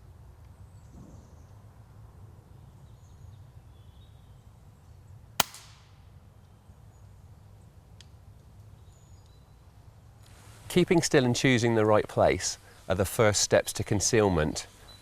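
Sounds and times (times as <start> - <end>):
air rifle shot: 5.4 - 6.0.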